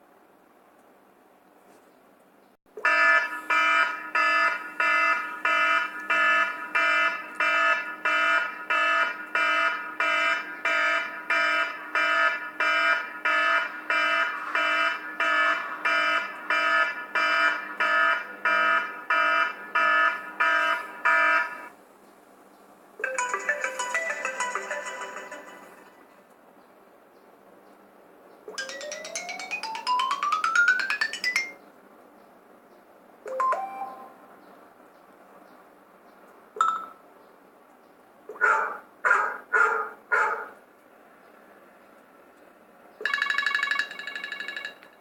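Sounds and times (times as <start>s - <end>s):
chiming ringtone: 23.0s - 25.9s, 28.5s - 31.6s, 33.3s - 34.2s, 36.6s - 37.0s, 43.0s - 44.9s
electronic alarm-like ringtone beeps: 28.5s - 31.6s, 33.3s - 34.2s, 36.6s - 37.0s, 43.0s - 44.9s.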